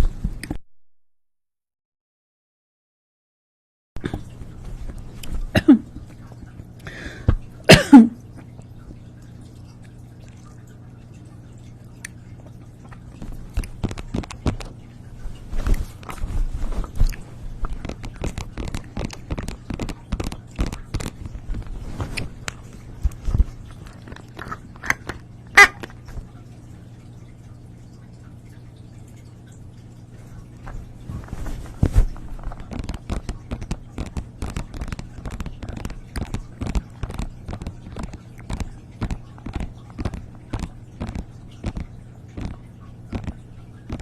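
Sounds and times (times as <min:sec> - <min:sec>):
chewing and crunching: 0:11.8 - 0:14.7, 0:15.3 - 0:26.2, 0:32.1 - 0:44.0.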